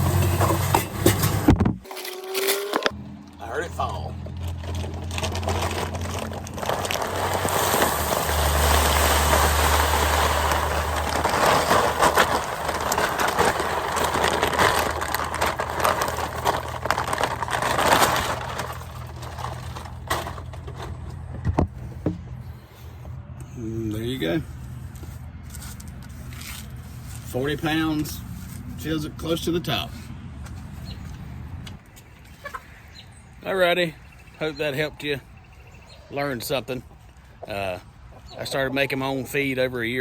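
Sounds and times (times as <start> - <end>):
grain pouring into plastic barrel: 4.5 - 20.1.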